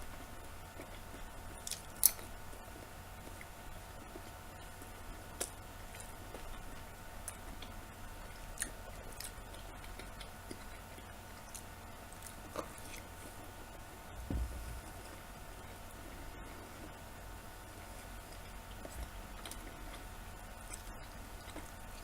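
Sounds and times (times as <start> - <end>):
low thump: 14.1 - 15.1.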